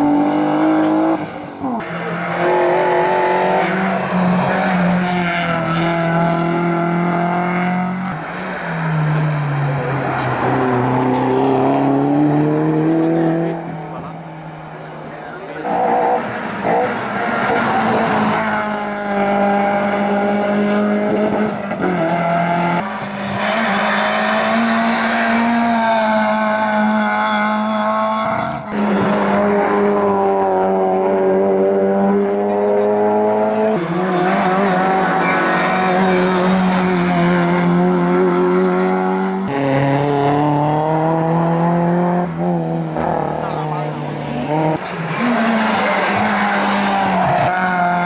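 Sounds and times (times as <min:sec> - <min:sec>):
race car engines at high revs: 0:00.0 - 0:48.0
tyre squeal: 0:34.1 - 0:36.9.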